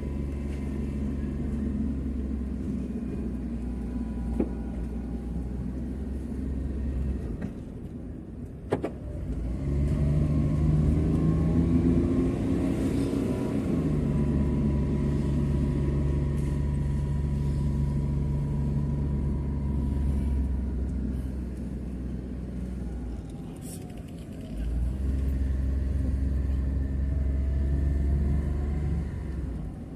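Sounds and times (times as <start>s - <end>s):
vehicle engine running: 9.9s - 29.9s.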